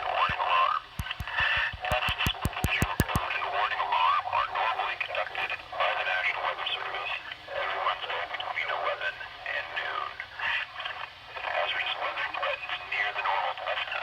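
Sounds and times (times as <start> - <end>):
rapid clicks: 1.0 - 3.2.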